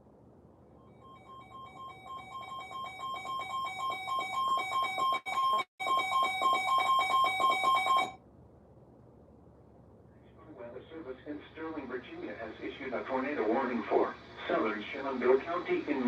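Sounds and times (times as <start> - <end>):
two-tone electronic alert chime: 0.8 - 8.2.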